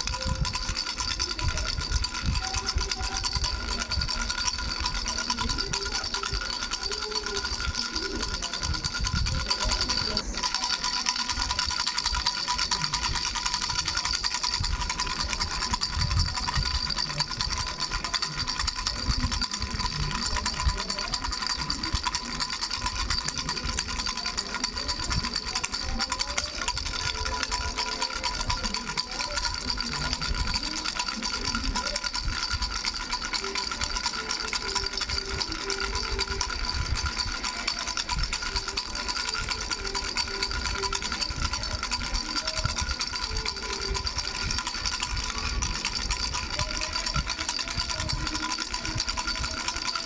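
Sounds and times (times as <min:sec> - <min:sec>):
baby's bell rattle shaken: 0:00.0 - 0:50.0.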